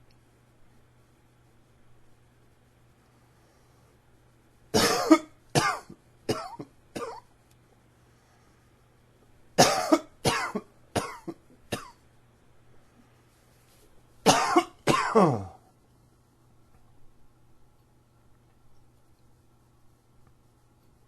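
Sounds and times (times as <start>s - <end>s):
man coughing: 4.8s - 7.3s, 9.6s - 12.0s, 14.3s - 15.6s.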